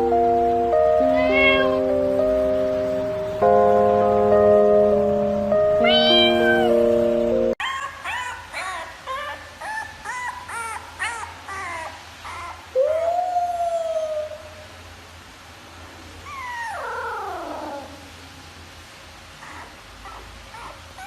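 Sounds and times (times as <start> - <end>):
pet animal calling: 1.0 - 1.9, 5.8 - 6.8.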